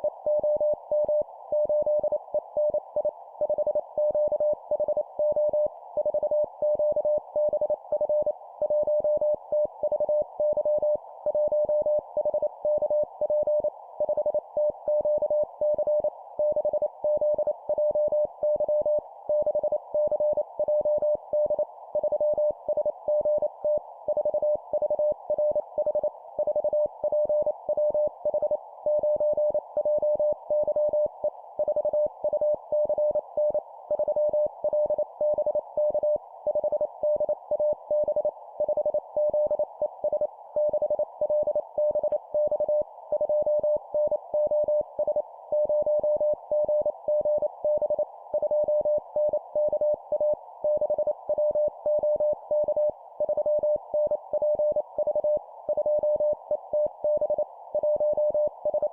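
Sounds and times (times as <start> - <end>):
morse code beeps: 12.6 - 58.9.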